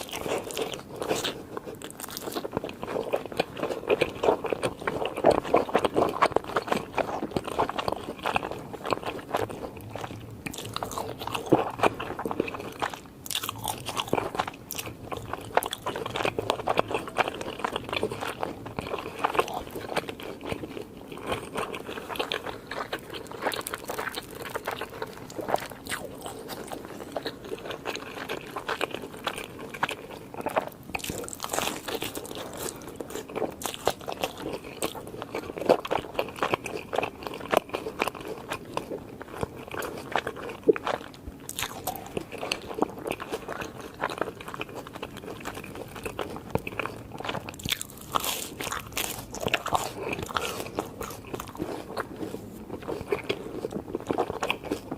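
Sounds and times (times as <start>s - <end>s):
crunchy food being chewed: 0.0s - 54.9s.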